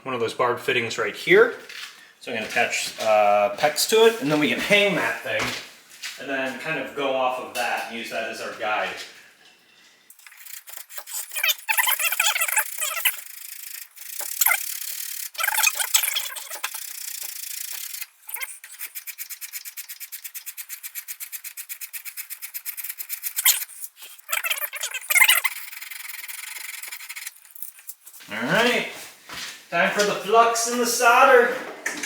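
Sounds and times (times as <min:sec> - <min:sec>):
wire brush scrubbing pipe: 0:10.1 - 0:28.9.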